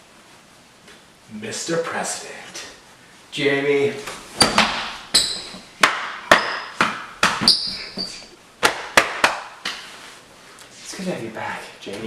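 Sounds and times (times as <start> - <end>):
sharp knocks with high ringing: 4.4 - 8.1.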